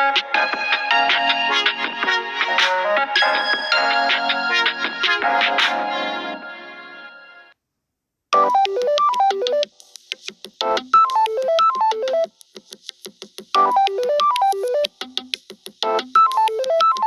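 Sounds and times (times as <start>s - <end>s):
keyboard-like phone ringtone: 0.9s - 6.4s, 8.4s - 9.7s, 10.8s - 12.3s, 13.6s - 15.0s, 16.0s - 17.0s.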